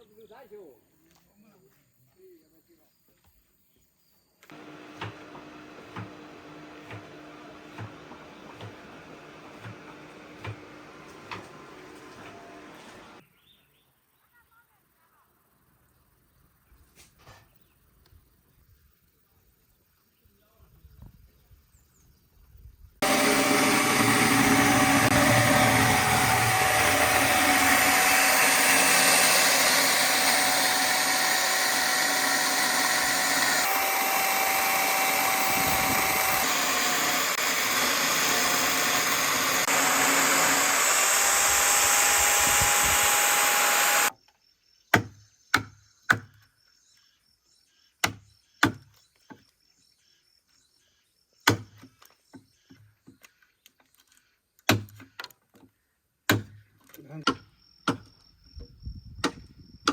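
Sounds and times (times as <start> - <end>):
power tool cutting wood: 4.5 - 13.2, 23.0 - 44.1.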